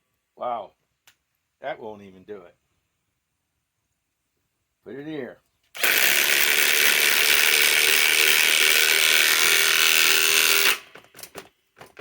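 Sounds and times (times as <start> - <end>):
impact wrench hammering: 5.8 - 11.0.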